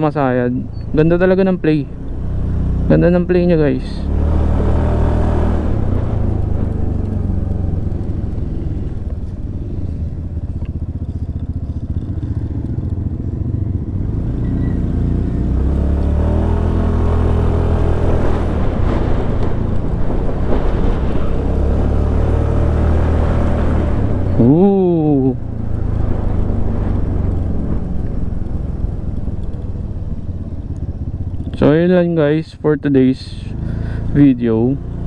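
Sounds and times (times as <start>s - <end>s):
scooter engine running: 6.8s - 15.8s.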